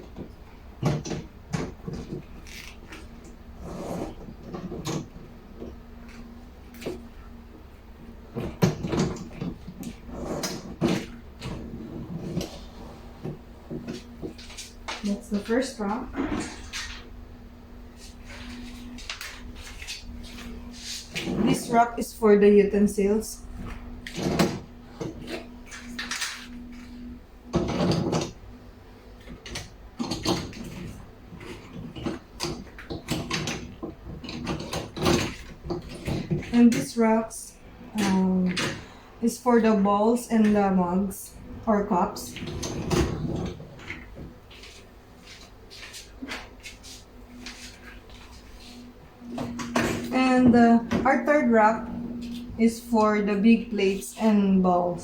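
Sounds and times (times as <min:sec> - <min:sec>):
dishwasher racks rattling and clattering: 0:08.3 - 0:17.2, 0:27.5 - 0:28.4, 0:29.2 - 0:37.4, 0:41.5 - 0:45.4, 0:49.3 - 0:52.6
dishwasher rack rolling scrape: 0:14.4 - 0:17.1, 0:18.0 - 0:22.6.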